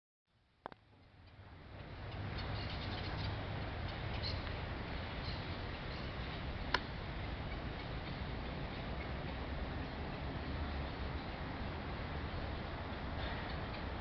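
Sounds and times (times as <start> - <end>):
faint bird chirps: 4.1 - 4.5.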